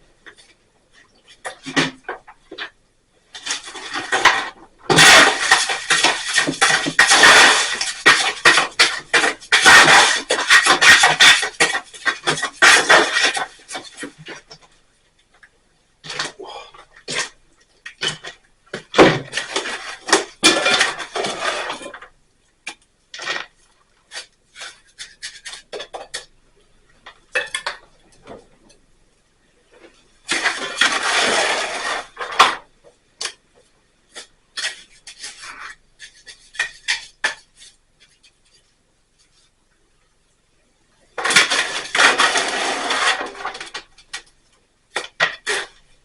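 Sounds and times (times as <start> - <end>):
metal scraping: 30.3 - 32.6.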